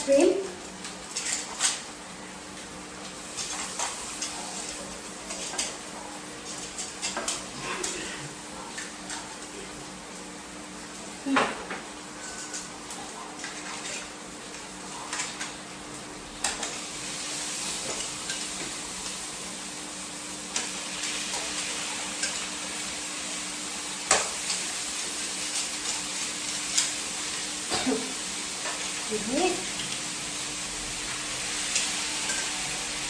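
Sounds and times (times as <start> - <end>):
seafood sizzling in a pan: 0.1 - 33.0
utensils clanking on pan: 1.0 - 1.9, 3.2 - 5.8, 6.4 - 8.2, 11.3 - 14.2, 16.4 - 16.9, 20.5 - 22.6, 24.0 - 30.0, 31.0 - 33.0.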